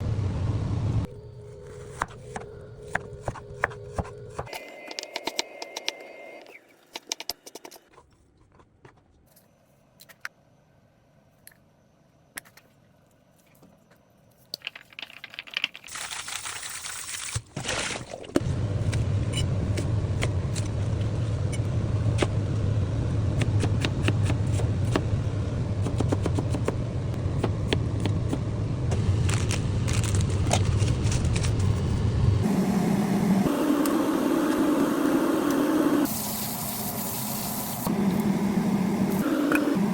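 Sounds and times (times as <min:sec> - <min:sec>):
low hum: 0:00.0 - 0:03.6, 0:18.4 - 0:39.9
food sizzling in a wok: 0:36.1 - 0:37.9.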